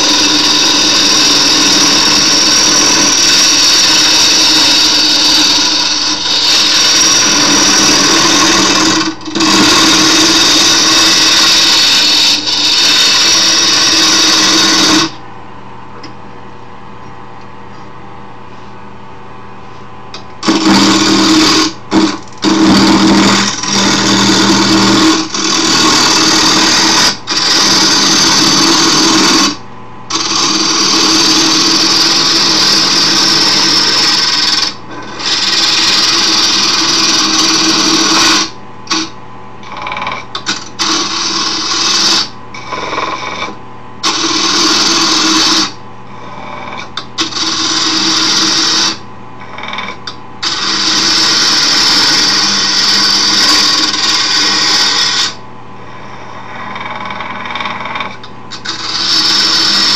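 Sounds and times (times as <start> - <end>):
lathe motor hum: 0.0 - 15.2, 20.2 - 59.9
lathe tool cutting wood hiss: 0.0 - 15.2, 20.4 - 39.1, 58.5 - 59.9.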